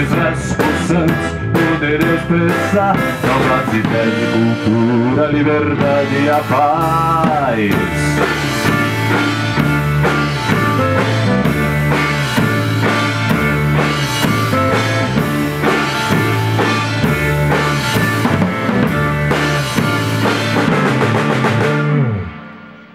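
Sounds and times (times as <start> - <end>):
drum kit hits: 0.0 - 22.9
rock band instrumental: 0.0 - 22.9.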